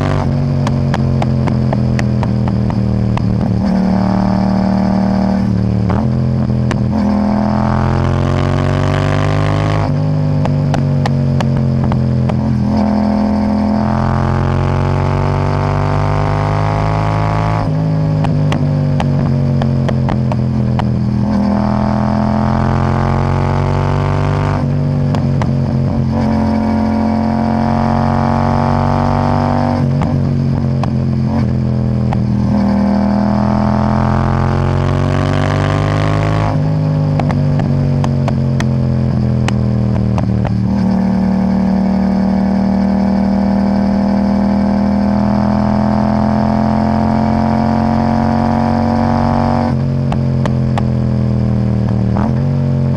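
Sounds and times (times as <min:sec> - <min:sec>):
exhaust crackling pops and bangs: 0:00.0 - 0:03.7, 0:10.4 - 0:12.6, 0:18.2 - 0:21.3, 0:37.2 - 0:40.8, 0:50.0 - 0:51.0
motorcycle engine revving: 0:00.0 - 0:52.9.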